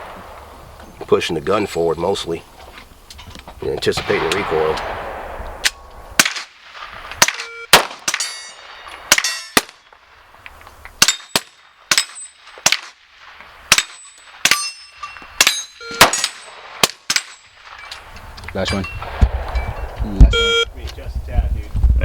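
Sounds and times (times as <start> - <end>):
gunshots: 3.9 - 10.0, 11.0 - 17.9
steel targets clanging: 7.2 - 9.8, 13.7 - 19.8
short beep: 7.4 - 7.7, 15.8 - 16.0, 19.6 - 20.7.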